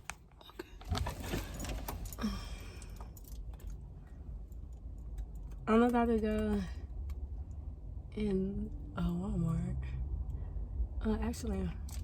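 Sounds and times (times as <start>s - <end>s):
low rumble inside a car: 0.0s - 12.0s
car keys jangling: 0.8s - 7.2s, 11.8s - 12.0s.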